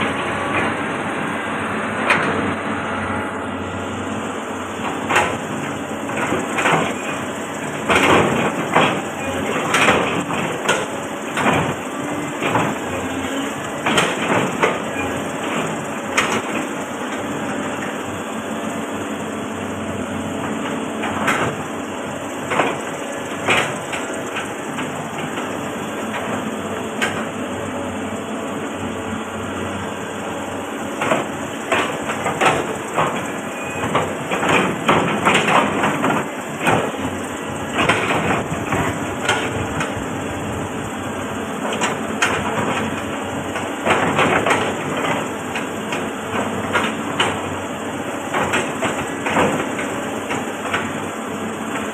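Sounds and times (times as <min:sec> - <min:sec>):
excavator diesel engine running: 0:00.0 - 0:51.9
machine knocks and clanks: 0:04.8 - 0:18.1, 0:20.4 - 0:27.4, 0:30.9 - 0:40.6, 0:41.6 - 0:51.1.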